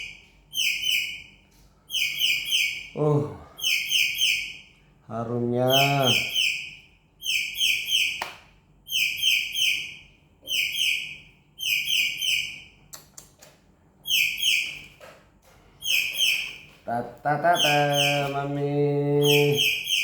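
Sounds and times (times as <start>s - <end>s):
bird chirping: 0.0s - 13.2s, 14.0s - 15.0s, 15.7s - 20.0s
sharp clicks: 12.9s - 13.6s.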